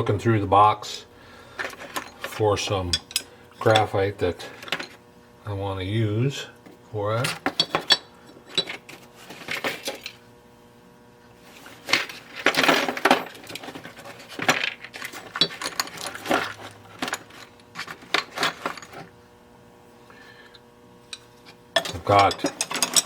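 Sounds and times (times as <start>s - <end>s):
metal parts clinking in a box: 7.2s - 10.2s, 11.5s - 19.1s, 21.8s - 23.0s.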